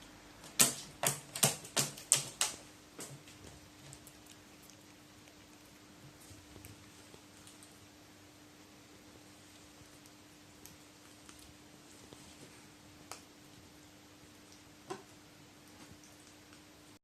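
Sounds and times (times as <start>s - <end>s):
low steady hum: 0.0s - 17.0s
faint sharp clicks and taps: 9.5s - 13.7s, 14.5s - 16.7s.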